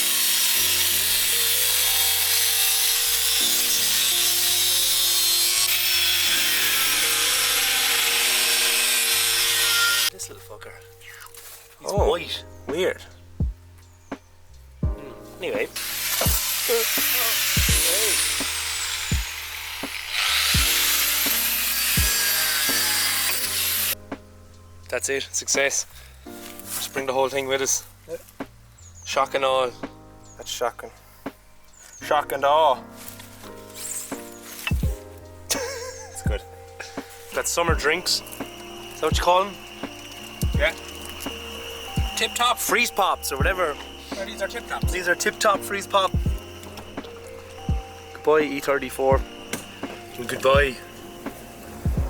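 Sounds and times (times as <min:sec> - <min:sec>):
power tool cutting metal: 0:00.0 - 0:10.1, 0:15.6 - 0:24.0, 0:33.8 - 0:52.0
background music with bass line: 0:10.1 - 0:52.0.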